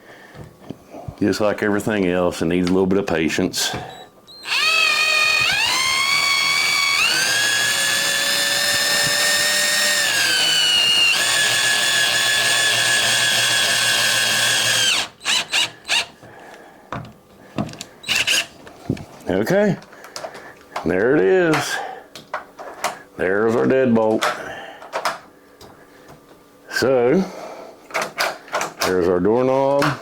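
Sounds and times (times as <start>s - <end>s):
power drill whining: 3.7s - 16.2s, 18.0s - 18.5s.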